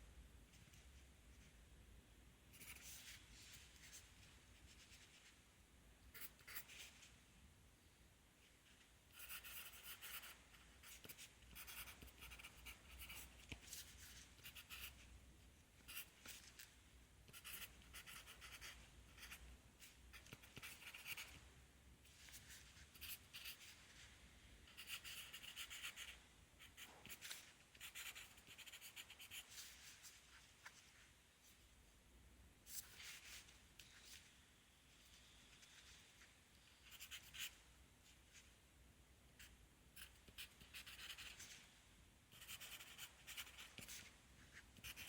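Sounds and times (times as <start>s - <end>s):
pencil writing on paper: 9.2s - 15.0s, 17.3s - 19.4s, 20.1s - 21.4s, 24.7s - 29.5s, 42.3s - 44.1s, 44.8s - 45.0s.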